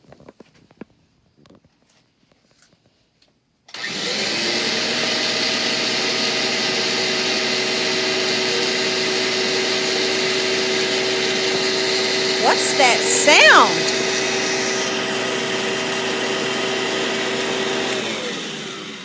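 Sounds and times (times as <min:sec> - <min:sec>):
vacuum cleaner motor whine: 0:03.8 - 0:12.6, 0:13.3 - 0:19.0.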